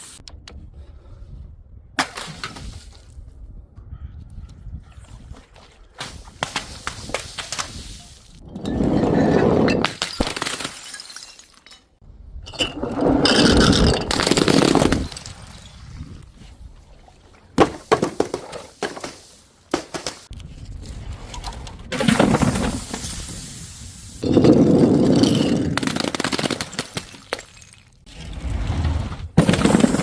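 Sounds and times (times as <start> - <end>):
glass bottles shattering: 8.5 - 15.7
glass clinking and cracking: 8.6 - 15.4.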